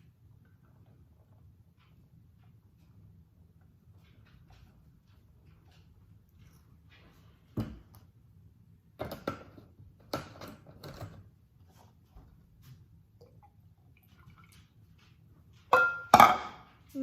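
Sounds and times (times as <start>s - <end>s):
kitchen items knocking and clunking: 8.9s - 11.4s, 14.1s - 17.0s.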